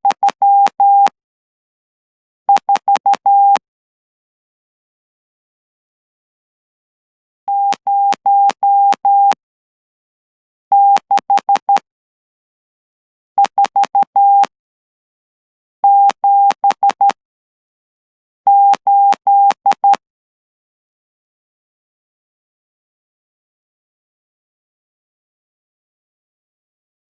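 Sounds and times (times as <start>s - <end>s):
morse code beeps: 0.1s - 1.1s, 2.5s - 3.6s, 7.5s - 9.4s, 10.7s - 11.8s, 13.4s - 14.5s, 15.9s - 17.2s, 18.5s - 20.0s.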